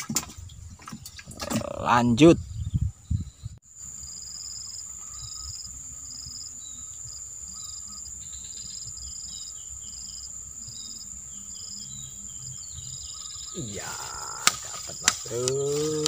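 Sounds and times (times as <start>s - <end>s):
insects trilling: 3.7s - 16.0s.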